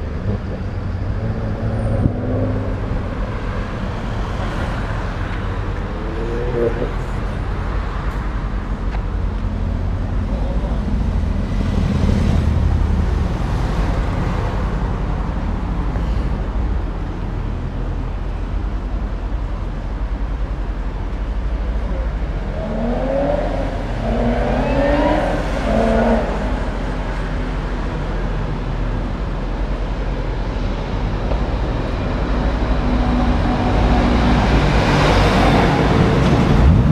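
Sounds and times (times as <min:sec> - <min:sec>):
car accelerating: 0:00.0 - 0:04.9
car engines rumbling: 0:00.0 - 0:36.9
passing traffic: 0:00.0 - 0:36.9.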